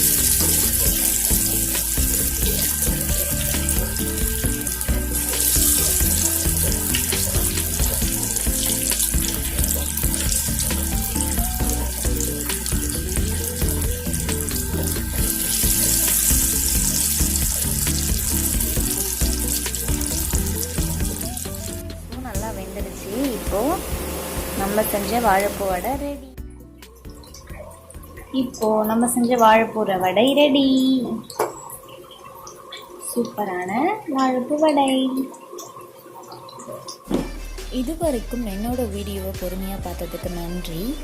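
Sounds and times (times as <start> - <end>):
food deep-frying in oil: 0.0 - 26.2, 26.9 - 38.1
background music: 0.0 - 41.0.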